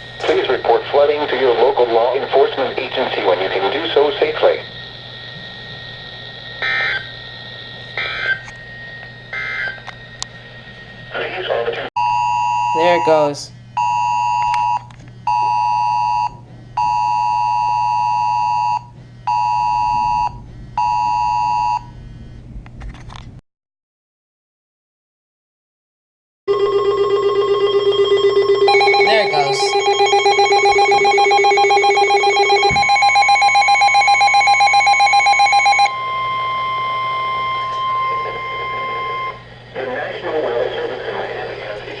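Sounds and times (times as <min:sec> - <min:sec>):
steady alarm tone: 0:00.0 - 0:11.4, 0:12.0 - 0:21.9, 0:26.5 - 0:39.8
steady low hum: 0:00.0 - 0:23.1, 0:27.7 - 0:42.0
electronic alarm trilling rapidly: 0:06.1 - 0:09.9, 0:26.5 - 0:39.4
two-tone alert beeps: 0:28.7 - 0:35.9.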